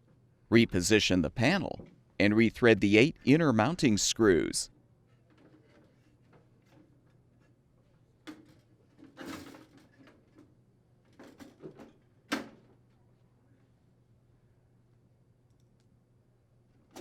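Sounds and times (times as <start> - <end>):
click: 15.5 - 15.9.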